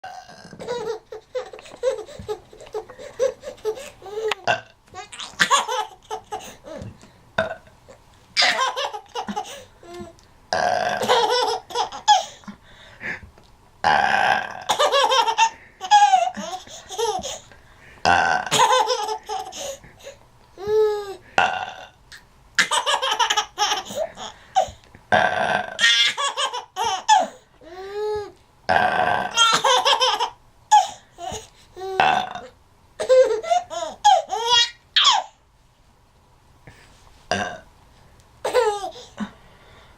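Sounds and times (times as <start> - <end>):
burping: 0.1 - 0.7, 4.4 - 4.8, 7.4 - 7.8, 10.5 - 11.2, 13.8 - 14.8, 18.0 - 18.6, 21.4 - 22.0, 25.1 - 25.9, 28.7 - 29.6, 32.0 - 32.6, 37.3 - 37.7
baby laughing: 0.1 - 7.0, 7.9 - 10.2, 11.0 - 12.4, 14.7 - 17.5, 18.5 - 21.2, 22.6 - 24.8, 25.8 - 28.3, 29.3 - 32.0, 33.0 - 35.4, 38.4 - 39.2.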